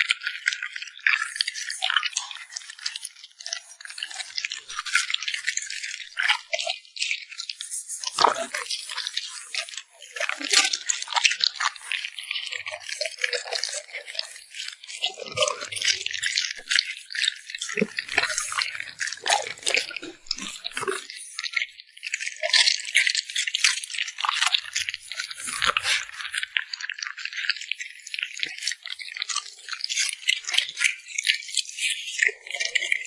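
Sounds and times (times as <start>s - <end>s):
dog chewing and lip smacking: 10.5s - 21.5s.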